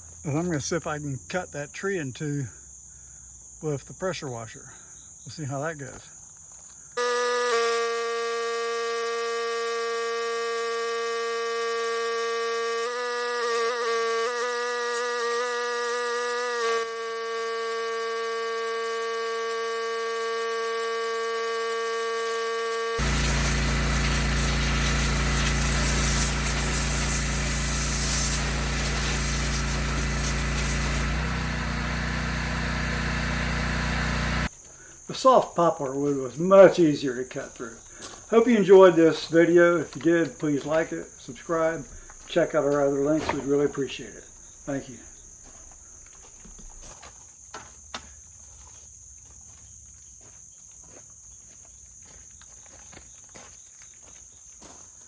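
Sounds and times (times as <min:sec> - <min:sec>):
pressure washer buzzing: 0:07.0 - 0:34.5
water jet hissing: 0:07.0 - 0:34.5.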